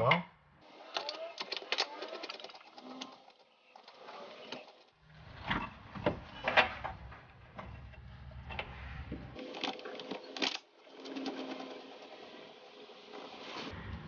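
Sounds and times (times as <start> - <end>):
metal knocks and clanks: 5.2 - 9.4.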